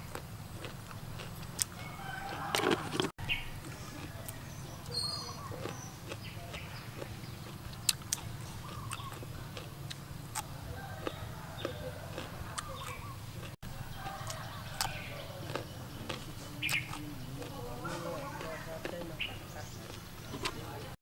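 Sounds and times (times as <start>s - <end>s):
faint bird chirps: 4.4s - 6.9s.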